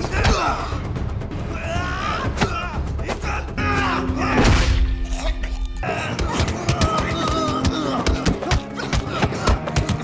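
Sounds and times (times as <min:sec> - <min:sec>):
action film music score: 0:00.0 - 0:10.0
men yelling and grunting: 0:00.0 - 0:10.0.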